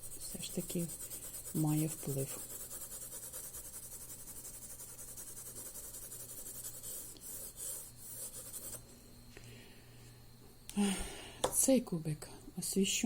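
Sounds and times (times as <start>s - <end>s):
pencil shading on paper: 0.0s - 8.8s.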